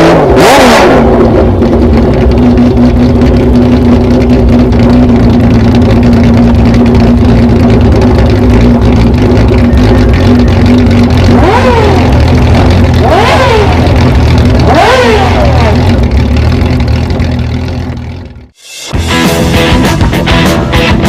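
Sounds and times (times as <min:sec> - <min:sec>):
motorcycle engine idling and revving: 0:00.0 - 0:21.0.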